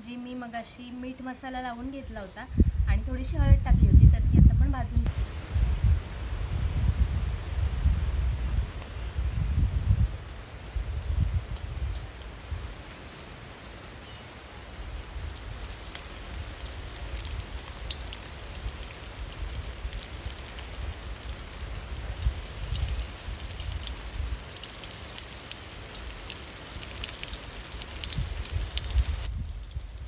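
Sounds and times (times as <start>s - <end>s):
oil sizzling in a pan: 6.6s - 30.0s.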